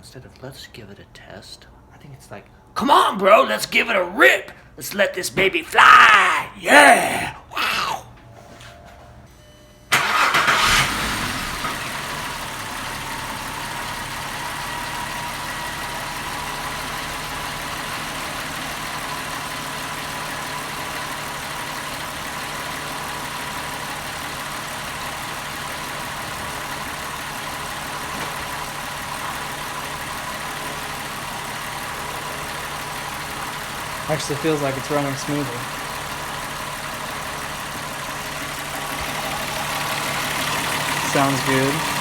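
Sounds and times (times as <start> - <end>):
car engine starting and idling: 9.9 - 42.0.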